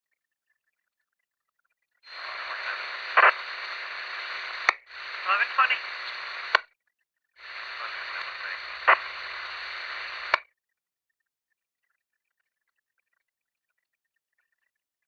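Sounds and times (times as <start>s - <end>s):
radio handset click: 2.1s - 6.6s, 7.4s - 10.4s
radio squelch click: 2.1s - 6.6s, 7.4s - 10.4s
radio static hiss: 2.1s - 6.6s, 7.4s - 10.4s.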